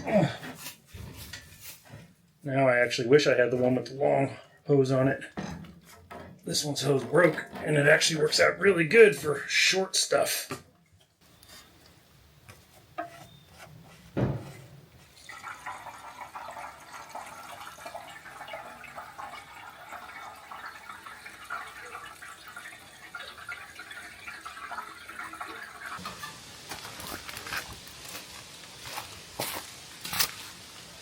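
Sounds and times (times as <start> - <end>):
thump: 14.2 - 14.7
fuel gurgling into a tank: 15.2 - 26.0.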